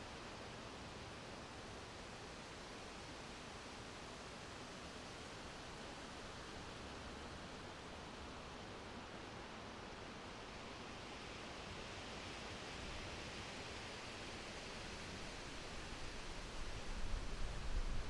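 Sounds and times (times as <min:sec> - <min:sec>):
wind rustling tree leaves: 0:06.2 - 0:18.0.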